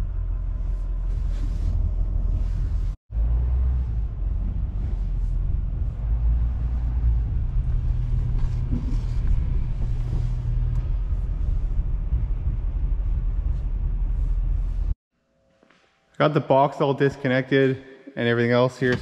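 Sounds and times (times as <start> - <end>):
diesel engine low rumble: 0.0 - 15.0.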